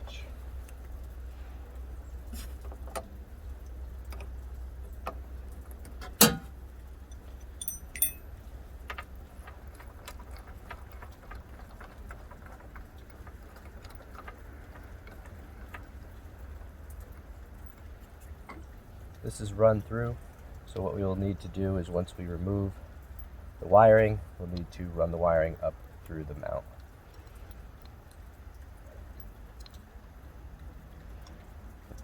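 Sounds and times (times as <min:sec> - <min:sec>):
high metallic ring: 0:07.5 - 0:08.2
wrench clicking on metal: 0:07.6 - 0:08.2.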